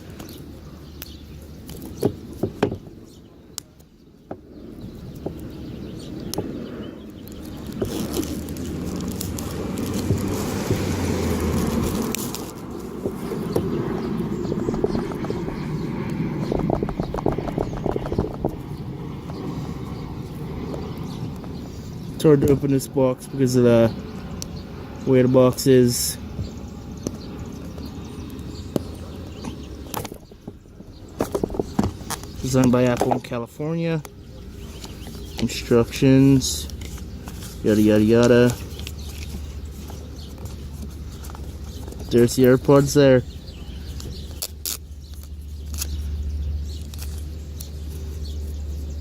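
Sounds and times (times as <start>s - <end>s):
low background hum: 0.0s - 49.0s.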